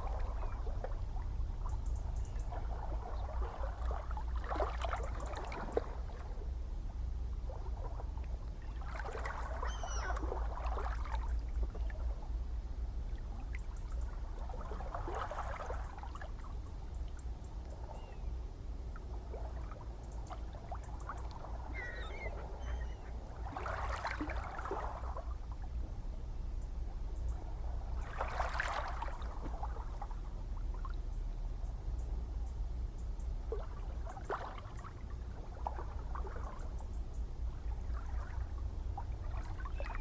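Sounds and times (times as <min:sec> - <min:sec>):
low rumble of the sea: 0:00.0 - 0:40.0
ocean waves splashing: 0:21.3 - 0:25.2.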